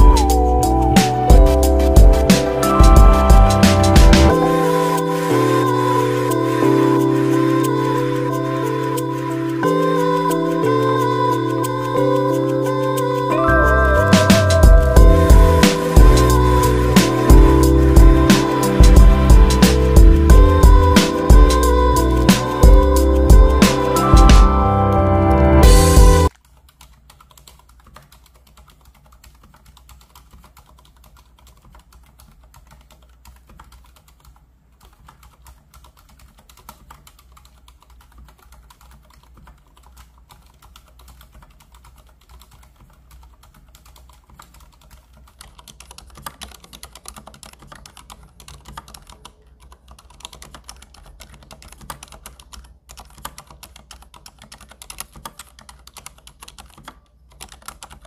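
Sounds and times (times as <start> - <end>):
typing on mechanical keyboard: 0.0 - 24.6, 25.7 - 58.0.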